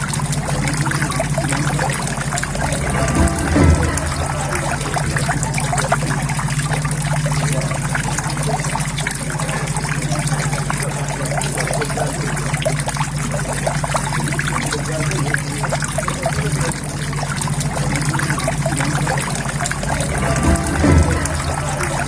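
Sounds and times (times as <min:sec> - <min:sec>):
low steady hum: 0:00.0 - 0:22.0
water trickling into pond: 0:00.0 - 0:22.0
brief low thump: 0:02.5 - 0:06.1, 0:19.8 - 0:22.0.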